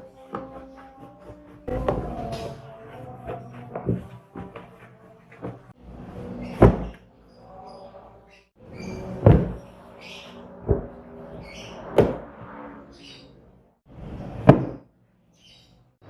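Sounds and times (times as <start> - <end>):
sharp household knocks: 14.4 - 14.8.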